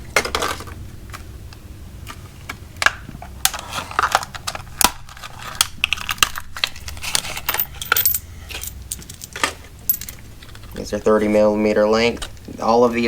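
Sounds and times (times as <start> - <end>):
metal bolts clinking: 7.2 - 10.3.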